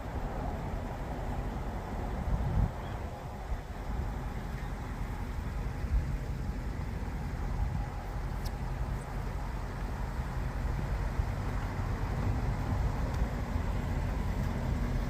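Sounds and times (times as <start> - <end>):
car engine exhaust rumble: 0.0 - 15.0.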